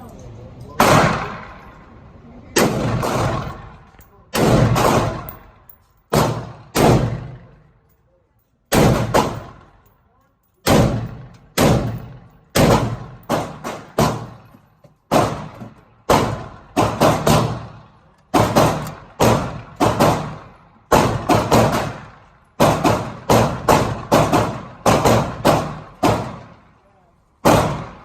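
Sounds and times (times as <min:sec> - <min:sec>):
semi-automatic gunfire: 0:02.6 - 0:03.7, 0:04.3 - 0:05.4, 0:06.1 - 0:07.4, 0:08.7 - 0:09.7, 0:10.6 - 0:14.4, 0:15.1 - 0:26.6, 0:27.4 - 0:28.0.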